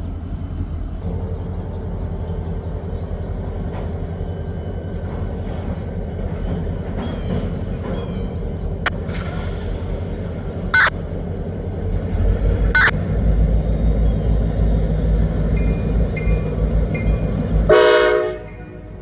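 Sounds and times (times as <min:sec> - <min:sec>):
diesel train rumbling: 0:00.0 - 0:19.0
train horn: 0:16.2 - 0:19.0.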